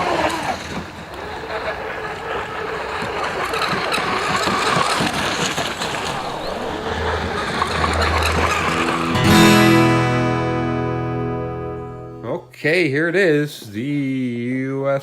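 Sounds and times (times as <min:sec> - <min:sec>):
rc boat running on water: 0:00.0 - 0:09.4
guitar chord ringing: 0:07.5 - 0:12.6.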